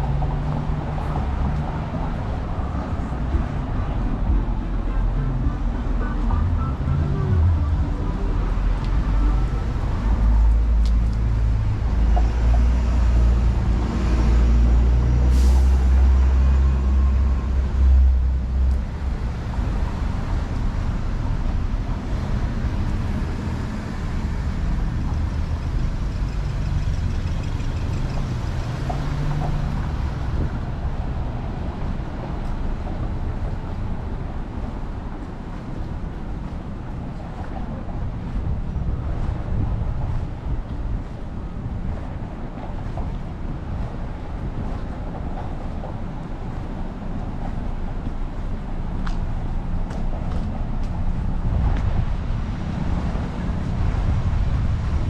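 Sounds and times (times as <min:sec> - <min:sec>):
heavy vehicle rumbling: 0:00.0 - 0:55.0
traffic noise: 0:00.0 - 0:55.0
air-brake hiss: 0:15.2 - 0:16.2.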